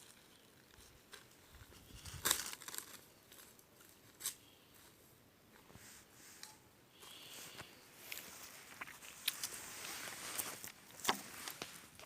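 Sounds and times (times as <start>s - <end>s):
rustling in dry undergrowth: 0.0s - 12.0s
twigs snapping: 2.0s - 4.4s.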